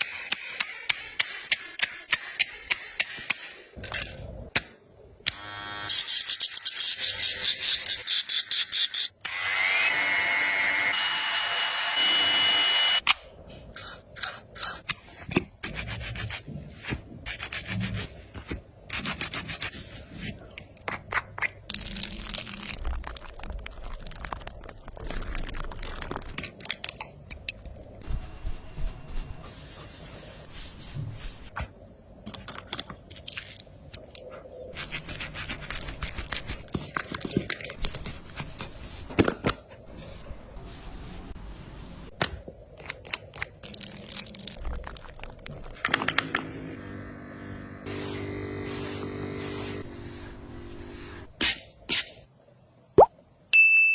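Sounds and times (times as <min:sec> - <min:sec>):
grooming brush scraping: 0:28.0 - 0:31.5, 0:47.8 - 0:51.4.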